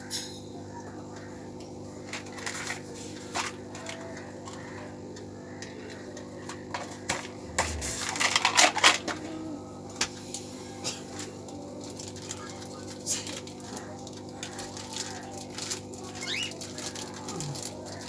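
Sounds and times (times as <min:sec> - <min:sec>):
low hum: 0:07.2 - 0:10.0
small objects clicking and clattering: 0:11.2 - 0:18.0.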